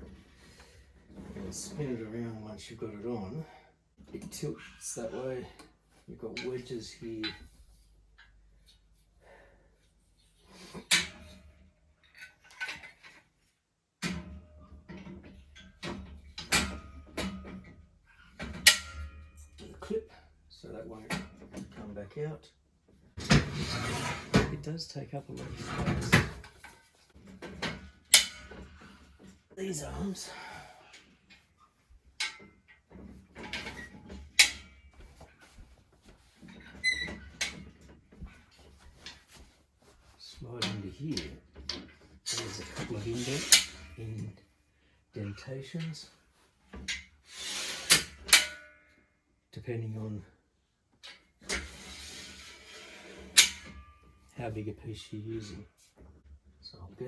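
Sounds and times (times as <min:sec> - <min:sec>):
metal knocks and scrapes: 0:23.1 - 0:24.7, 0:25.3 - 0:30.0, 0:40.6 - 0:44.3.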